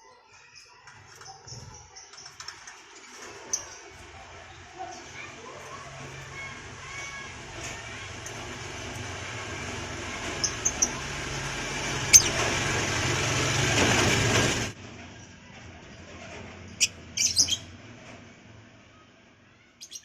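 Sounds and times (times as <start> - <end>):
bird chirping: 0.1 - 11.2, 12.1 - 12.5, 16.7 - 17.7, 19.8 - 20.0.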